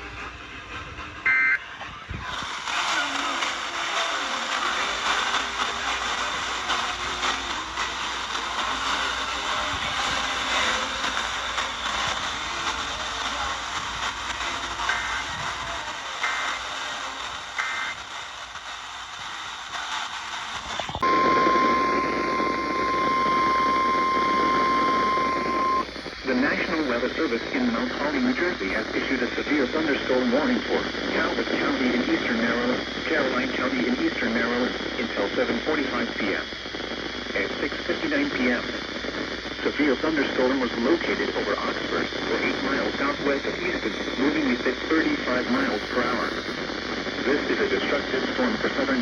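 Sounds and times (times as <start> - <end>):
static hiss: 2.1 - 49.0
digital data tones burst: 21.0 - 27.1.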